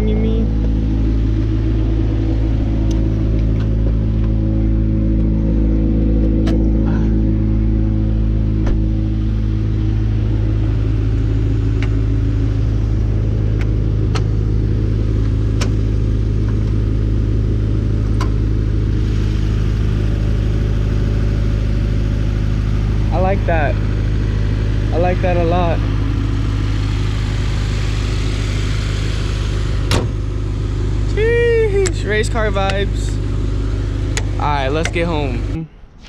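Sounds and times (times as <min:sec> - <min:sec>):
car engine rumbling: 0:00.0 - 0:36.0.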